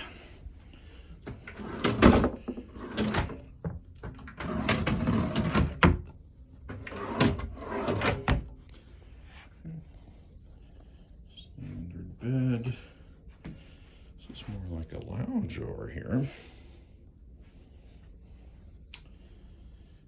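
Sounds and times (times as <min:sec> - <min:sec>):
drawers sliding open and shut: 0:01.2 - 0:08.6.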